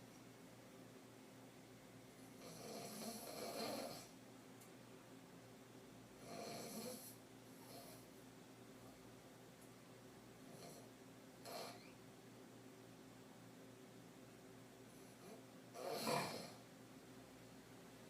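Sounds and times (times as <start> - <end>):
woman snoring: 2.4 - 4.1, 6.2 - 8.0, 15.8 - 16.6.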